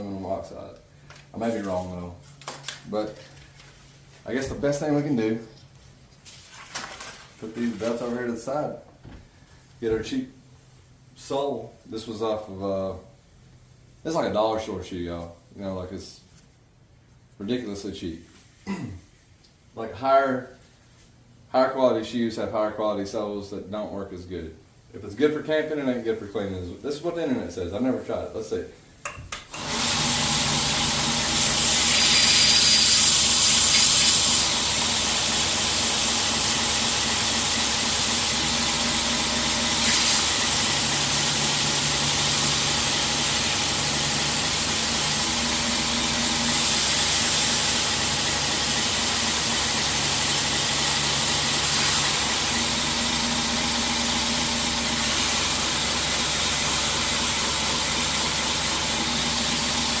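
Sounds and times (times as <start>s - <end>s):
belt grinder motor humming: 29.6s - 60.0s
abrasive belt hissing: 31.4s - 34.6s, 39.7s - 45.2s.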